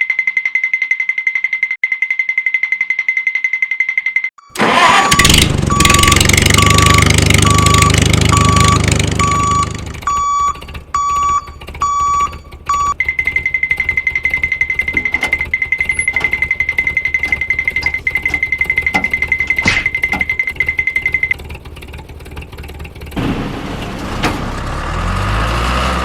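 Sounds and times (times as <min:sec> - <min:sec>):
long beeps: 0:00.1 - 0:21.4
repeating beeping tone: 0:04.4 - 0:21.4
loud engine running: 0:04.6 - 0:19.4, 0:20.6 - 0:26.0.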